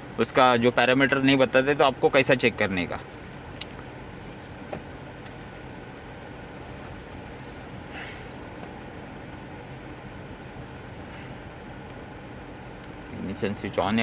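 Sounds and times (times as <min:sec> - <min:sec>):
short high electronic beeps: 0:07.4 - 0:07.6.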